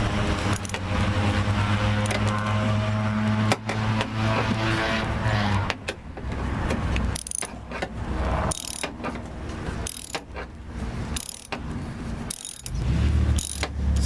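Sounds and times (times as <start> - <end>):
ratchet wrench clicking: 0.4 - 0.9, 5.8 - 14.0.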